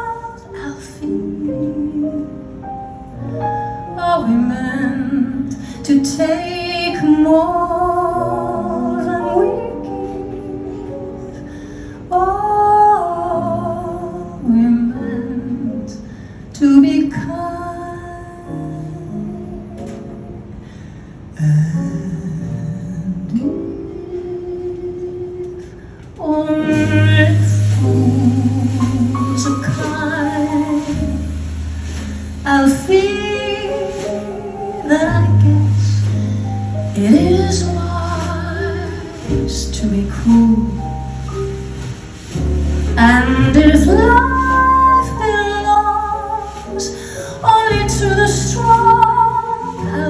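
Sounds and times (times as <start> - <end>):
woman singing a slow ballad: 0.0 - 20.4, 21.3 - 41.9, 42.8 - 50.0
instrumental accompaniment: 26.7 - 50.0
steady bass line: 26.8 - 33.7.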